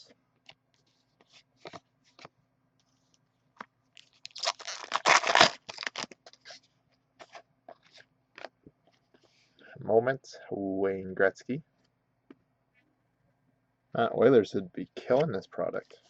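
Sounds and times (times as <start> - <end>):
wrapper crinkling and tearing: 4.0 - 6.6.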